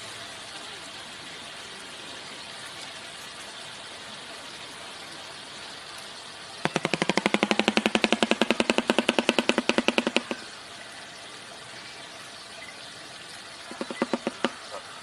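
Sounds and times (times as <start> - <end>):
background hiss: 0.0 - 15.0
bird clattering its bill: 6.6 - 10.4, 13.7 - 14.8.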